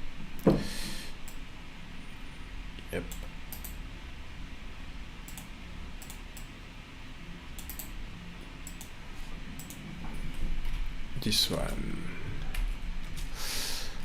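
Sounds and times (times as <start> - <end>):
low steady hum: 0.0 - 14.0
keyboard keys clicking: 7.6 - 7.9.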